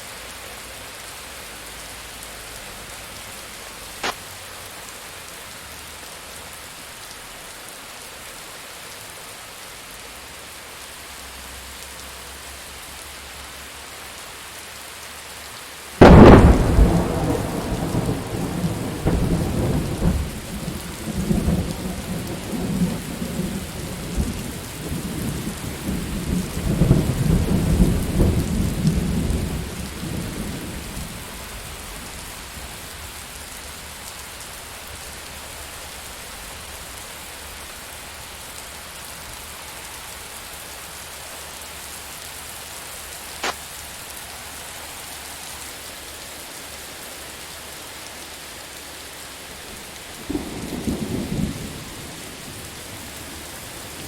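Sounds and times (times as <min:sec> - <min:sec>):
heavy rain: 0:00.0 - 0:54.0
thunder rumbling: 0:16.0 - 0:32.2, 0:50.2 - 0:54.0.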